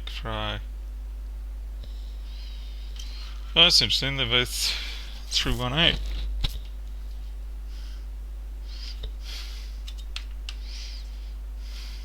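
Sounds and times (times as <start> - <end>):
low electrical hum: 0.0 - 12.0
soft breathing: 1.8 - 3.5, 4.5 - 5.5, 7.1 - 10.0, 10.6 - 12.0.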